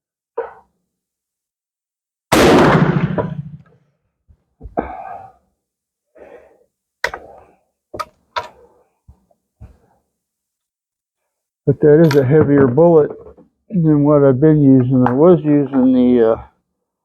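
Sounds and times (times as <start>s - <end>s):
rifle shot: 2.3s - 3.8s.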